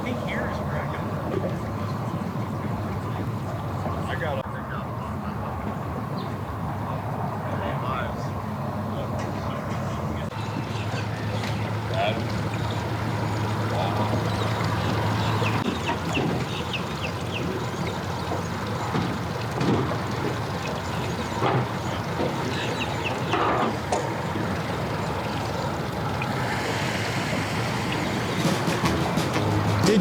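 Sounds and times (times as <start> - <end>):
birds chirping: 7.5 - 30.0
steady background hum: 7.5 - 30.0.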